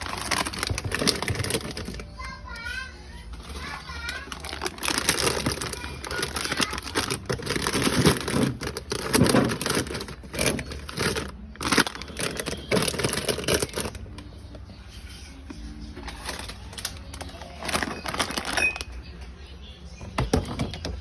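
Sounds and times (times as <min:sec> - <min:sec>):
plastic packaging crinkling: 0:00.0 - 0:02.6, 0:03.3 - 0:14.2, 0:16.1 - 0:19.0.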